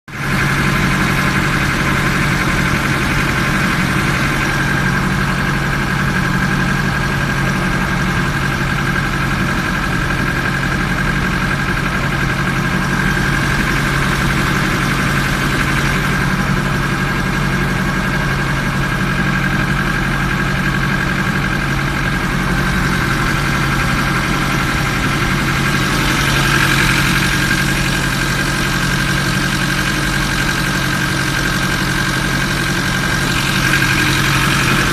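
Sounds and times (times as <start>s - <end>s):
ferry engine droning: 0.1s - 34.9s.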